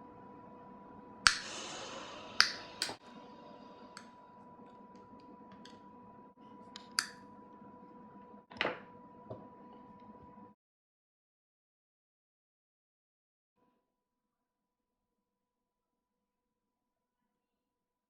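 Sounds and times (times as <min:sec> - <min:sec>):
thin high whine: 0:00.0 - 0:08.2.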